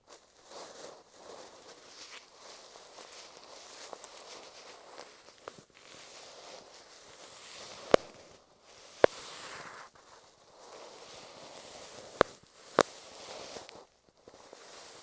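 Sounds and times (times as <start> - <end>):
sharp clicks: 7.9 - 8.2.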